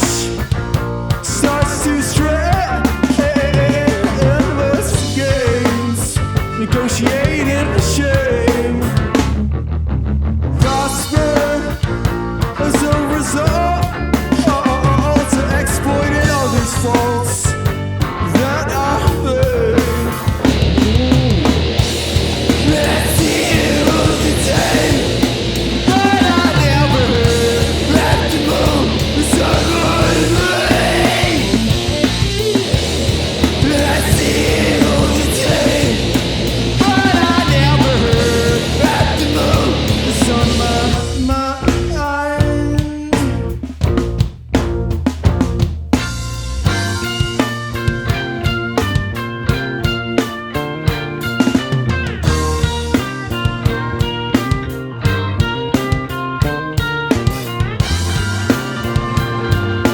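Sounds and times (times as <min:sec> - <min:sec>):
bass: 0:00.0 - 0:59.9
distorted guitars: 0:00.0 - 0:59.9
drums: 0:00.0 - 0:59.9
live punk rock band: 0:00.0 - 0:59.9
person singing: 0:22.5 - 0:32.6, 0:33.4 - 0:43.4.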